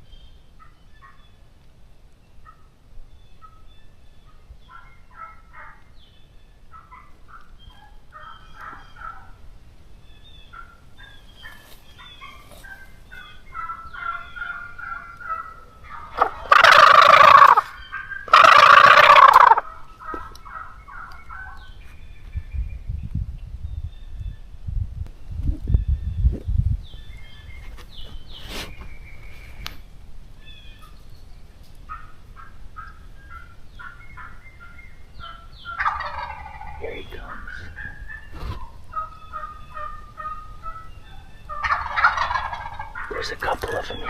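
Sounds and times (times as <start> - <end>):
faint songbird chirps: 0.0 - 31.7, 32.8 - 44.0
turkey gobbling: 4.6 - 5.8, 6.7 - 9.4, 10.5 - 21.7, 31.8 - 44.0.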